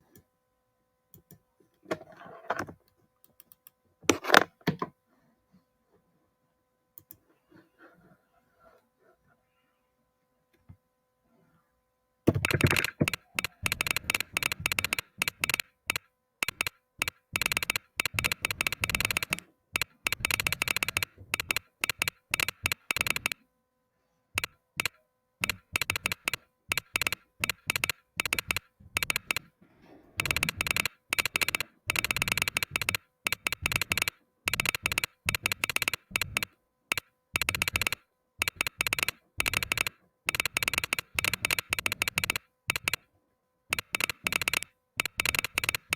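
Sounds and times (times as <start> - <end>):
typing on mechanical keyboard: 12.3 - 23.4, 24.4 - 29.5, 30.2 - 43.0, 43.7 - 45.9.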